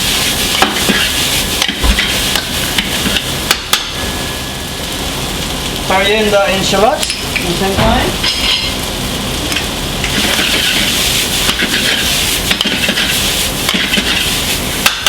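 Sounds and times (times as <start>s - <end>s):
fried rice sizzling in a pan: 0.0s - 15.0s
utensil scraping a pan: 10.1s - 15.0s.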